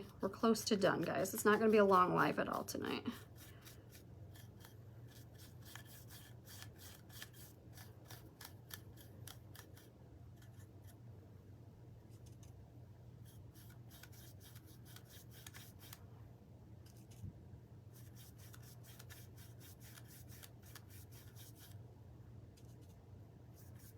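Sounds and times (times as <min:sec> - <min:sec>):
paintbrush stroking wood: 0:00.0 - 0:09.9, 0:13.2 - 0:16.0, 0:18.0 - 0:21.8, 0:23.6 - 0:23.9.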